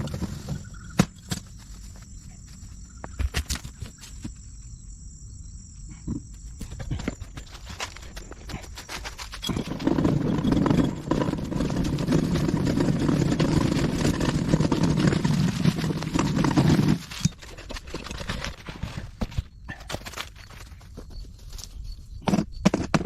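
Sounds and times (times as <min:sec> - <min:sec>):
loaded cart rattling over rough ground: 0:06.7 - 0:20.8.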